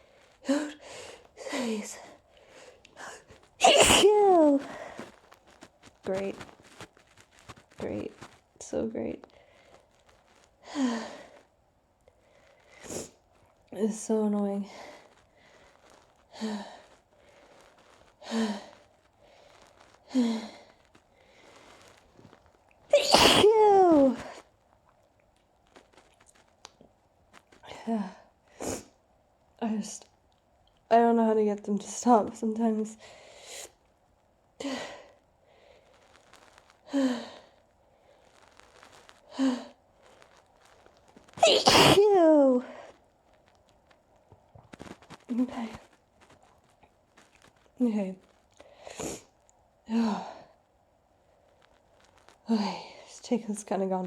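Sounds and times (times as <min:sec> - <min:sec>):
person sneezing: 0:03.6 - 0:04.8, 0:22.9 - 0:24.4, 0:41.4 - 0:42.8.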